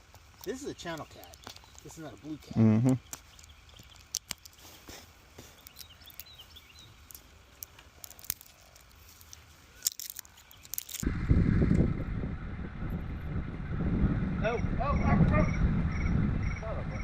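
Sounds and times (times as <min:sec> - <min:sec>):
loud low rumbling: 0:11.0 - 0:17.0.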